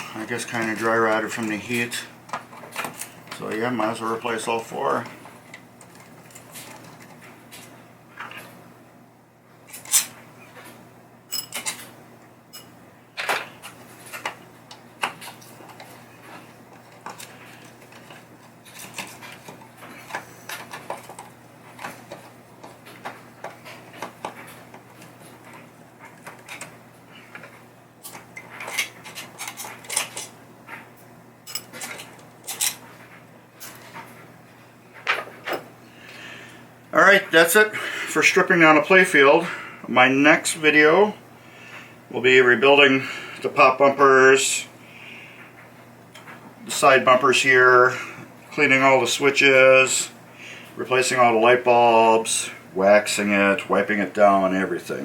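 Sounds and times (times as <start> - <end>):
steady low hum: 0.0 - 55.0
clatter of small parts and tools: 27.3 - 30.4, 31.5 - 32.8.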